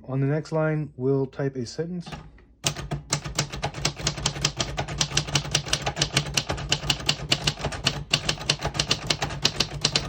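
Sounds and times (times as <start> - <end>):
typewriter keys clacking: 2.6 - 10.0.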